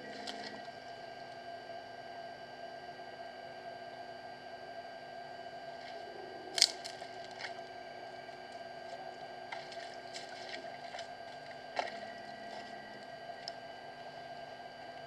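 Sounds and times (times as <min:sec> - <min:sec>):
steady electrical hum: 0:00.0 - 0:15.0
water splashing and squelching: 0:06.6 - 0:07.6, 0:09.4 - 0:12.7.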